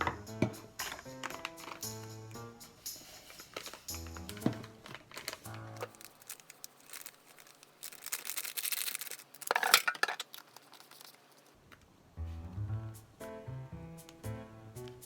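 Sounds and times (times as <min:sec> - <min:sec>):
music: 0:00.0 - 0:05.9, 0:12.2 - 0:15.0
rustling or tearing: 0:04.8 - 0:11.6.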